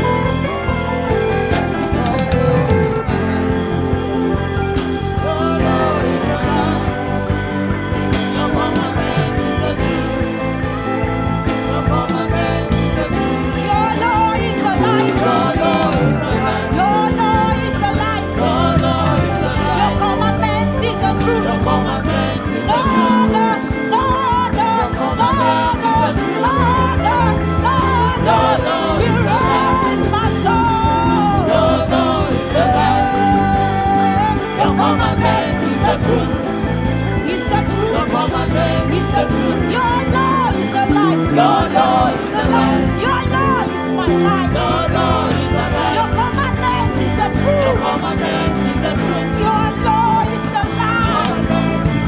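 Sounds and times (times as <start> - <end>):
band playing: 0.0 - 52.0
bass notes: 0.0 - 52.0
person singing gospel song: 1.6 - 52.0
drum beat: 15.0 - 17.2, 18.4 - 20.0.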